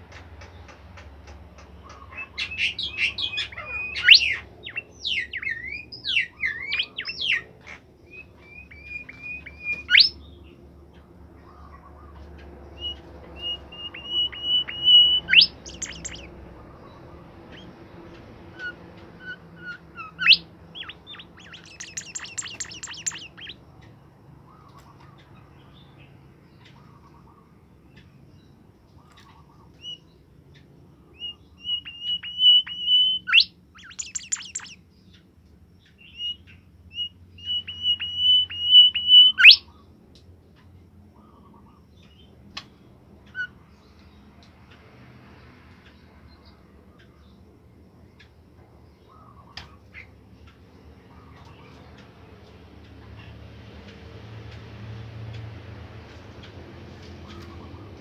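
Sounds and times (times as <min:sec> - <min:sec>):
songbird singing: 0:00.0 - 0:40.0.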